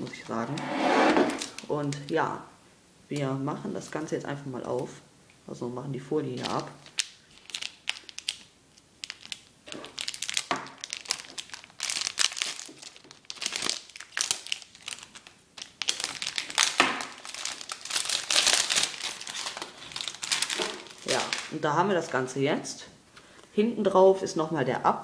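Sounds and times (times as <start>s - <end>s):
plastic film crinkling: 1.4s - 2.2s, 6.3s - 22.2s.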